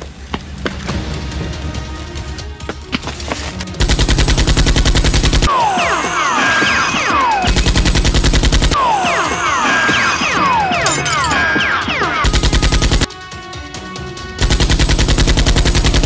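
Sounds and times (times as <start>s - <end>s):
music: 0.0s - 16.0s
automatic gunfire: 14.4s - 16.0s.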